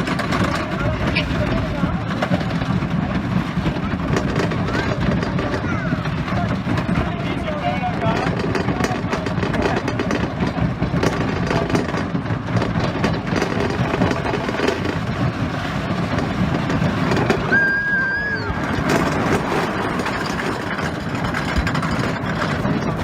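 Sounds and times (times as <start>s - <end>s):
rapid wheel clatter: 0.0s - 23.0s
roller coaster rattling on track: 0.0s - 23.0s
high squeal: 17.5s - 18.7s.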